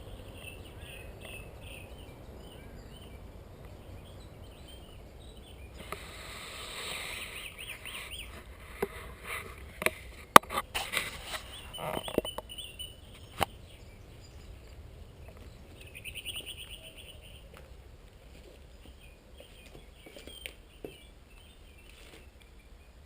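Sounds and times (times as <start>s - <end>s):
small birds chirping: 0.0s - 23.0s.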